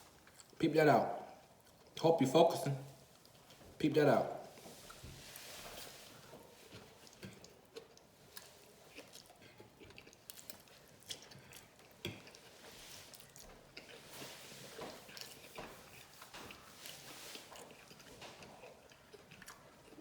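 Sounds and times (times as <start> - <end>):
chewing and wet mouth clicks: 6.7 - 12.6, 17.5 - 20.0.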